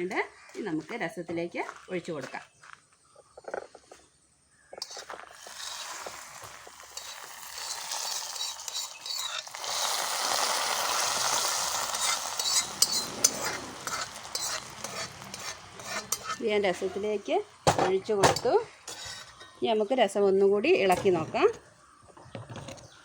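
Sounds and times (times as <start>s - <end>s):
hot oil sizzling in liquid: 4.8s - 19.9s
metal clinks and scrapes of stirring: 6.9s - 10.0s, 12.0s - 17.2s, 18.3s - 19.6s.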